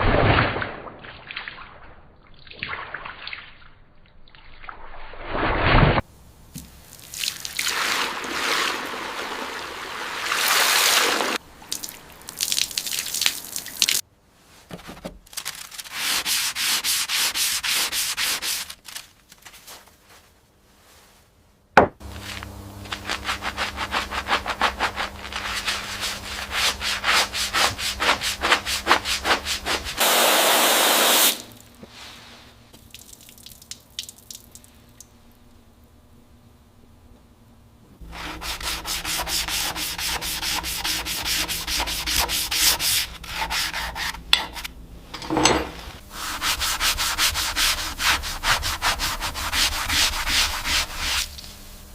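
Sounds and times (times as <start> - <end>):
sanding rust off metal: 15.6 - 18.8, 22.1 - 30.2, 38.0 - 44.7, 46.1 - 51.3.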